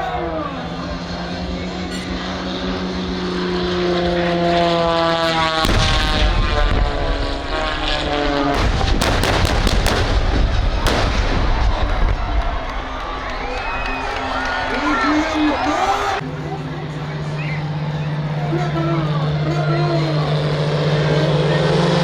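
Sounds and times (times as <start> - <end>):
aircraft engine flying past: 0.0 - 22.0
loud low rumble: 5.0 - 13.5
sharp cracks: 5.2 - 12.8.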